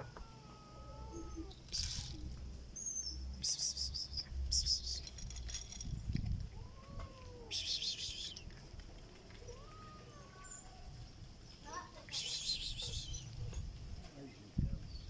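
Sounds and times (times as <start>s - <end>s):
cat meowing: 0.0s - 1.6s, 6.5s - 8.2s, 9.5s - 10.8s.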